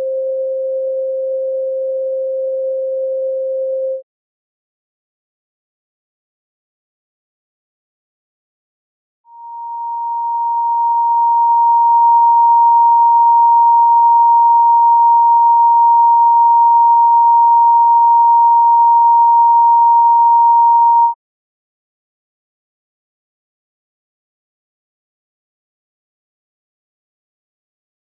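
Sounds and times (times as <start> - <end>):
electronic sine tone: 0.0 - 4.0, 9.3 - 21.2.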